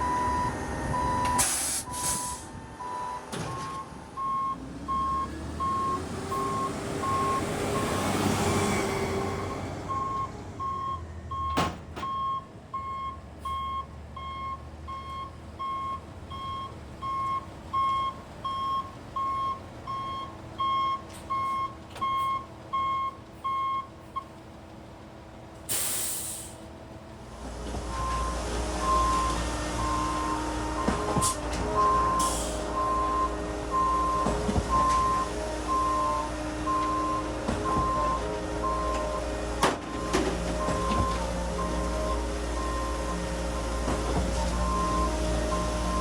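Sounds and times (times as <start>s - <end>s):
truck backup alarm beeping: 0.0s - 24.5s, 27.8s - 46.0s
diesel engine running: 0.0s - 46.0s
air brake hiss: 1.4s - 2.5s, 25.7s - 26.7s, 32.2s - 32.8s.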